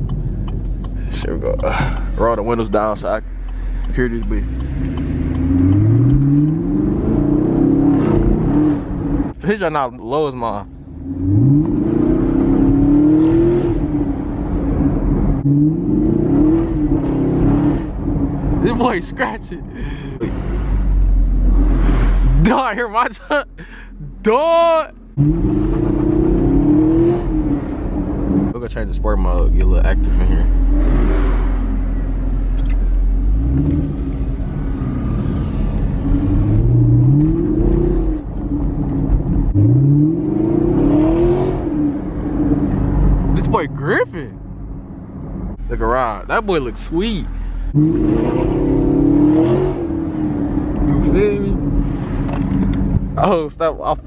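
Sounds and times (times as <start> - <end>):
car engine accelerating hard: 0.0 - 23.1, 24.1 - 54.0.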